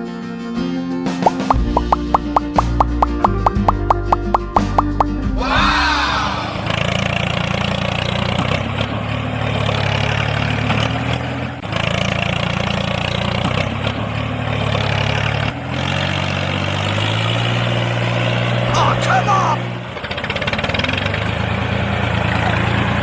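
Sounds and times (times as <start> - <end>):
tractor engine running: 1.2 - 5.3, 6.6 - 23.0.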